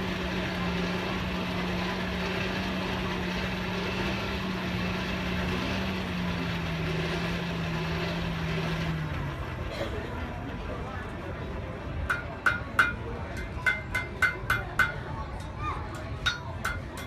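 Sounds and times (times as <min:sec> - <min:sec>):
motor droning: 0:00.0 - 0:10.6.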